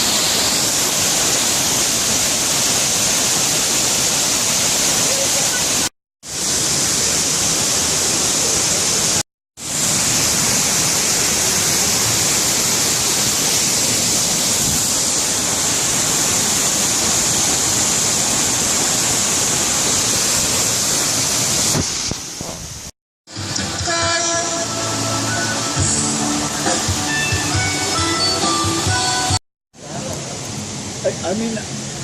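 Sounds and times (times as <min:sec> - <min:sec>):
waterfall rushing: 0:00.0 - 0:22.4.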